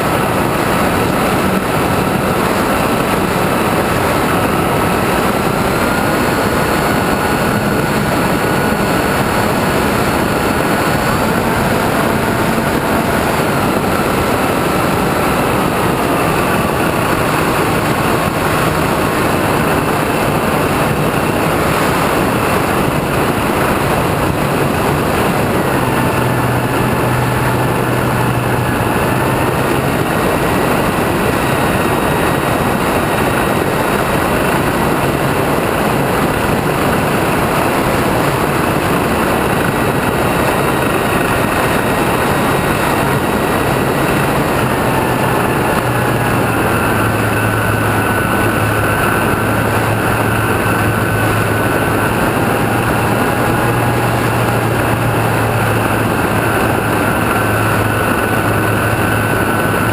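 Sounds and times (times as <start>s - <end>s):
model plane motor and propeller: 0.0s - 59.9s
rushing wind noise: 0.0s - 59.9s.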